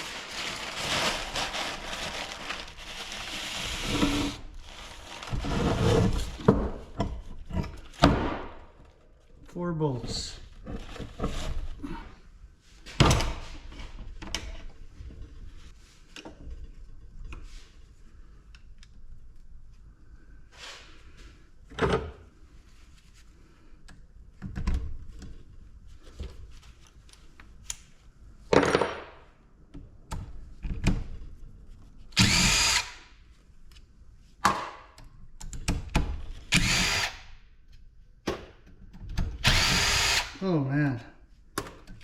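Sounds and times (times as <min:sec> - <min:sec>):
power drill whining in bursts: 0:32.2 - 0:33.0, 0:36.5 - 0:37.2, 0:39.4 - 0:40.4.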